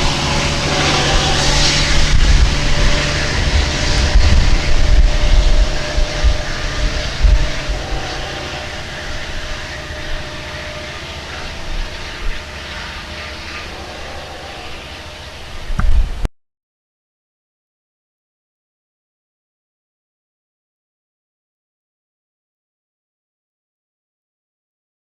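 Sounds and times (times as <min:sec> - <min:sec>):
diesel train rumbling past: 0:00.0 - 0:16.3.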